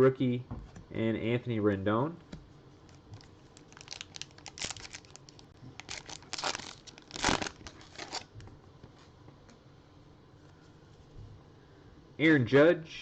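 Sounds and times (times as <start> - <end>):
wrapper tearing and crinkling: 3.6 - 8.3.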